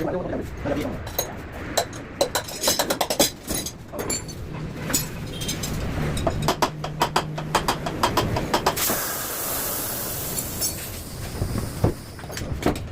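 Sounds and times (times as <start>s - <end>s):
metal tools clinking: 1.0s - 6.5s.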